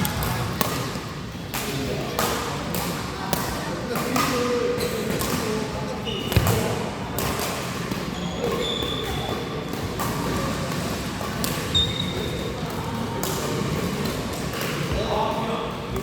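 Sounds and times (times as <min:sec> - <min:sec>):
shoes squeaking on court floor: 0:06.0 - 0:06.9, 0:08.0 - 0:09.6, 0:11.7 - 0:12.4.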